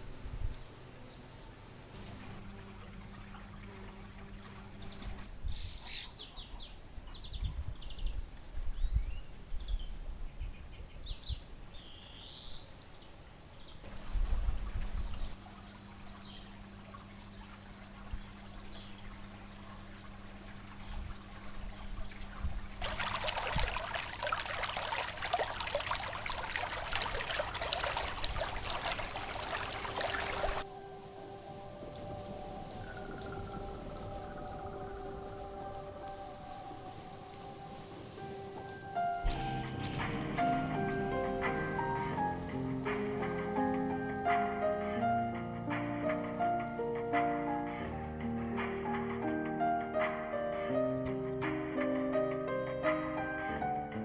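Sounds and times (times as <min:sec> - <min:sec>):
water trickling and splashing: 0:00.0 - 0:08.7, 0:12.9 - 0:43.7
songbirds chirping: 0:00.0 - 0:39.2.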